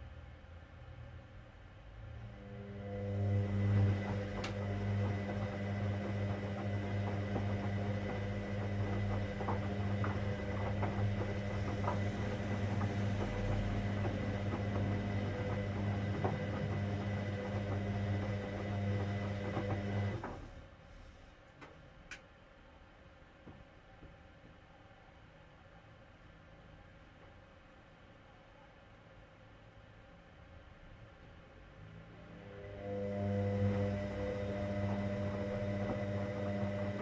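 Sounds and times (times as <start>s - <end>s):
washing machine humming: 2.1s - 20.9s, 32.0s - 37.0s.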